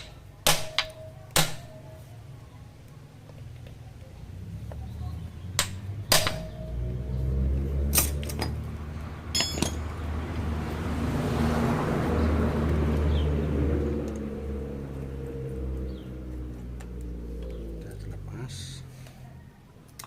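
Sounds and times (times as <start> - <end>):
tools being set down: 9.3 - 9.9.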